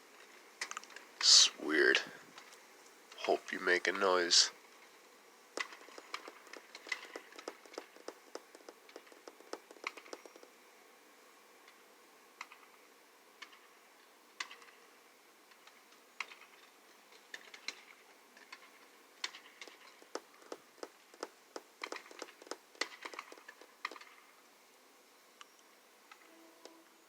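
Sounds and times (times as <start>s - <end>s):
sharp clicks and taps: 5.6s - 10.5s, 19.2s - 24.1s.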